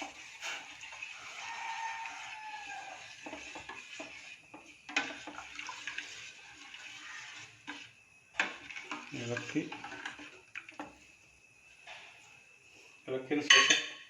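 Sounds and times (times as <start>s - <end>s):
spoon stirring liquid in pan: 0.0s - 12.3s
spoon clinking against pan: 13.5s - 14.0s.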